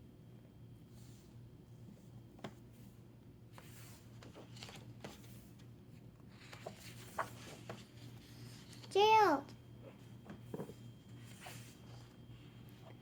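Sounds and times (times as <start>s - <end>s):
low room hum: 0.0s - 13.0s
paper rustling: 2.3s - 9.0s.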